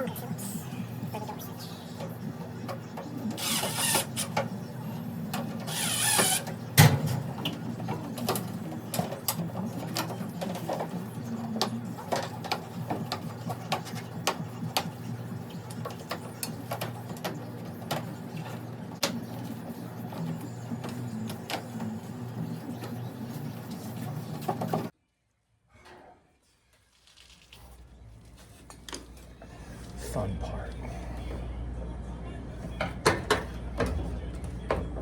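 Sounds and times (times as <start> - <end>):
steady low hum: 27.7 - 35.0.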